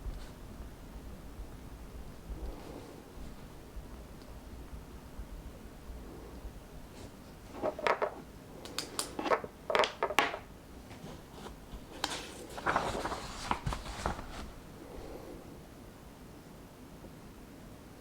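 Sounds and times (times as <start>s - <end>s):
book pages turning: 7.5s - 14.6s.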